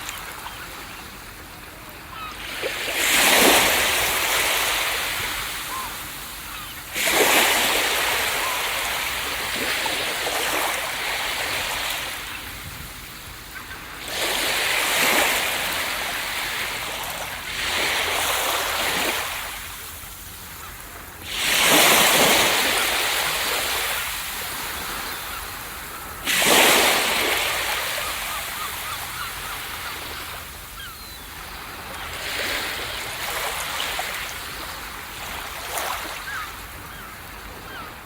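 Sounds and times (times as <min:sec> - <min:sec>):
ocean waves breaking: 0:00.0 - 0:38.0.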